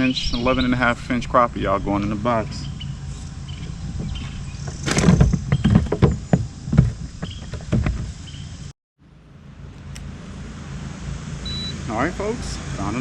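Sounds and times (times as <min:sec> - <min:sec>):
knocks and thumps on a kayak: 0:03.6 - 0:08.3.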